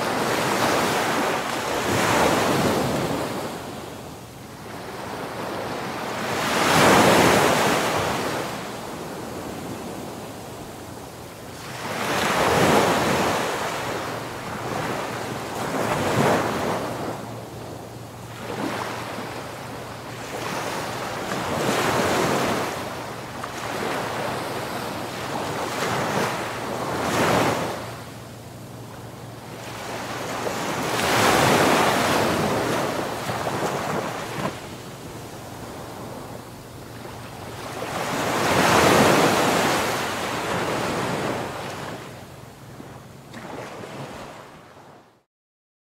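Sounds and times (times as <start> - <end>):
ocean waves breaking on shore: 0.0 - 45.2.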